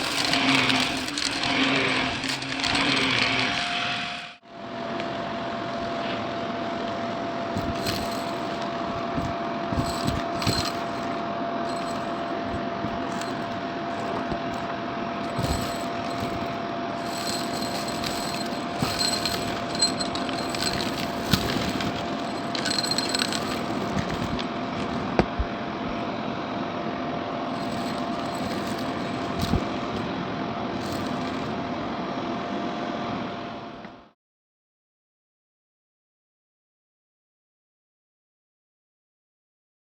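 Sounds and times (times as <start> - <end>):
debris clicking in vacuum: 0.0 - 3.6, 7.6 - 25.4, 27.6 - 30.0
vacuum cleaner whining: 0.0 - 26.3, 27.6 - 32.1.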